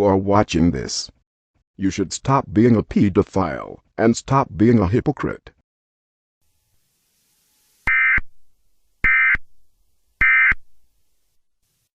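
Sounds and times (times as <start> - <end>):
digital data tone bursts: 7.2 - 8.3, 9.0 - 9.4, 10.2 - 10.6.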